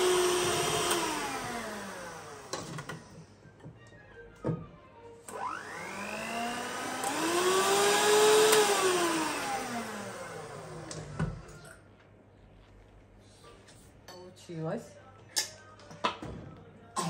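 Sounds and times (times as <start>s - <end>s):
electric mixer motor whine: 0.0s - 3.0s, 5.3s - 11.5s.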